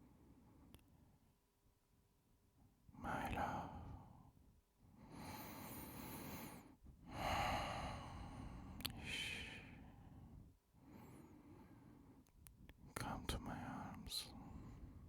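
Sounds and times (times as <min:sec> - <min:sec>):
man breathing heavily: 0:05.0 - 0:11.9.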